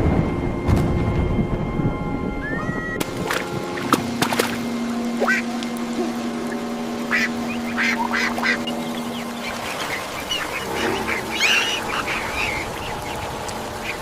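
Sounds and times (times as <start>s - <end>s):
duck quacking: 5.2s - 14.0s.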